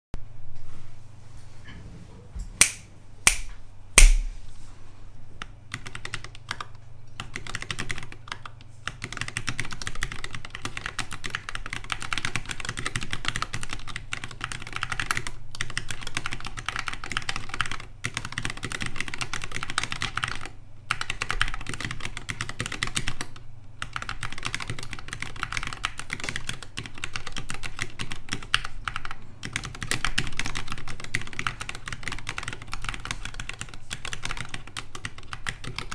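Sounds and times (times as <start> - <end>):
fast mechanical keyboard typing: 5.7 - 35.9
loud keyboard clicks: 5.7 - 35.9.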